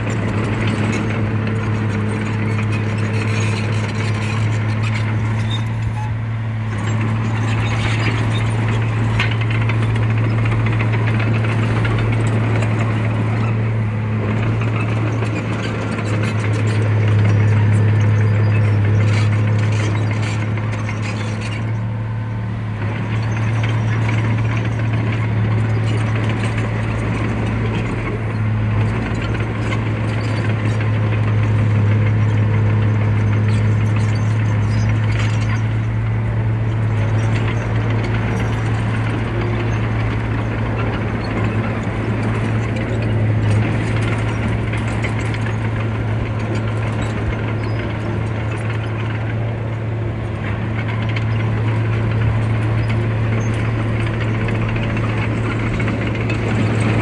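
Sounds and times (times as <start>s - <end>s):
heavy machine engine humming: 0.0s - 57.0s
mechanical clatter and rattling: 36.7s - 49.6s, 50.3s - 57.0s.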